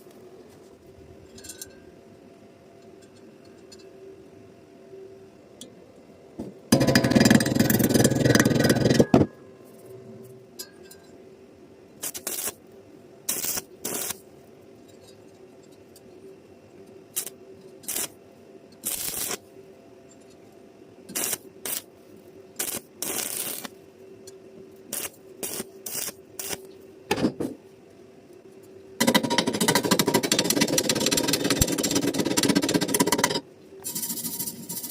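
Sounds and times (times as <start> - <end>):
steady hum: 0.0 - 34.9
welding arc crackling: 12.0 - 12.6, 13.3 - 14.2, 17.2 - 18.2, 18.8 - 19.4, 21.1 - 21.9, 22.6 - 23.7, 24.9 - 26.7.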